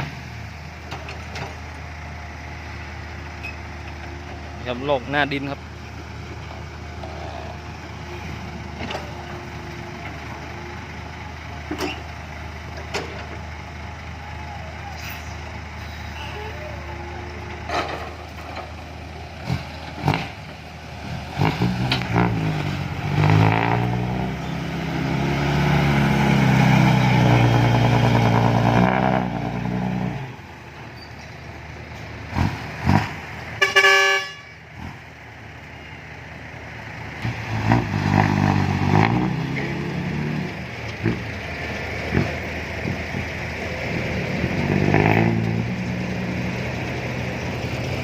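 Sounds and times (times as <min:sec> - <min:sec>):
heavy diesel engine revving: 0:04.2 - 0:30.7, 0:31.5 - 0:48.0
short horn toot: 0:33.6 - 0:34.6.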